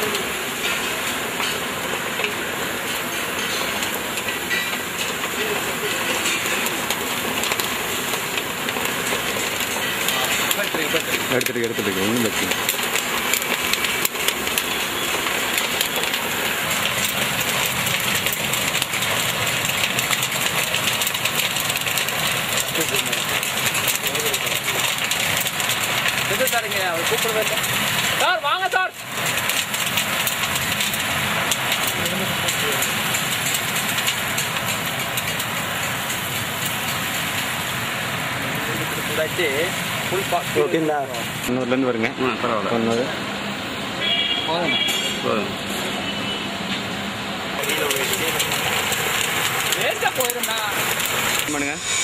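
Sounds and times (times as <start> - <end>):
popcorn machine crackling: 0.0 - 52.0.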